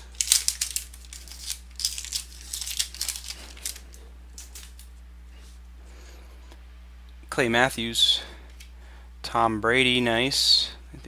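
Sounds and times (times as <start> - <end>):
foil wrapper crinkling: 0.0 - 4.9.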